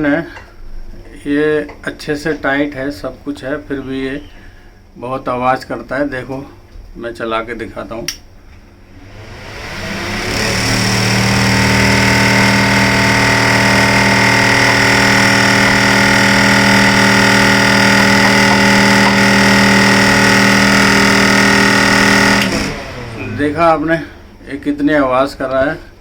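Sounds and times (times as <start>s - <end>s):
exhaust fan humming drone: 6.2s - 26.0s.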